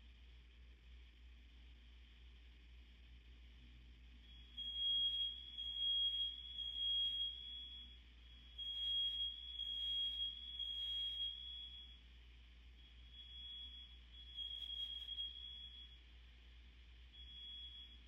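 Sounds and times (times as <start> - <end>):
fire alarm pulsing tone: 4.3 - 12.0, 12.9 - 16.0, 17.2 - 18.0.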